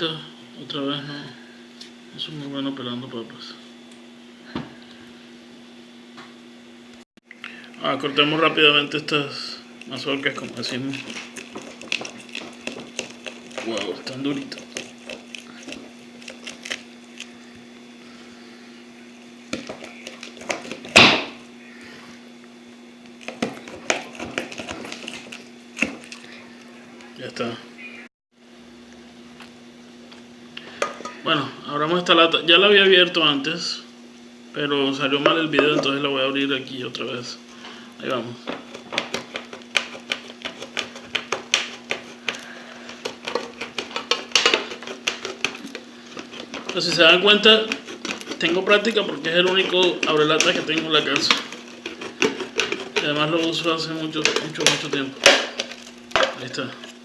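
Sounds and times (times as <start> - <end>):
knife cutting corn cobs: 10.2 - 17.3, 23.2 - 26.2, 38.5 - 57.0.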